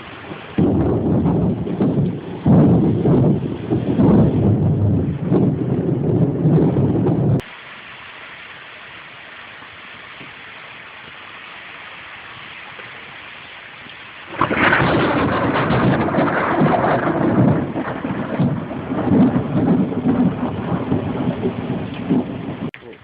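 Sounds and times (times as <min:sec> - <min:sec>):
thunder crack and rumble: 0:00.0 - 0:07.5, 0:14.3 - 0:22.7
rain hissing: 0:00.0 - 0:23.0.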